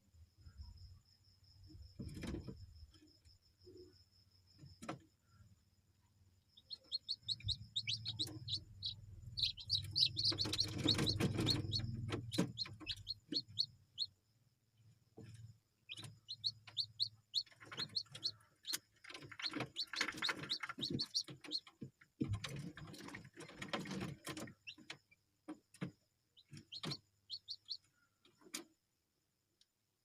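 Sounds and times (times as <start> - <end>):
chicks peeping: 6.6 - 14.2, 15.2 - 25.0, 25.7 - 28.6.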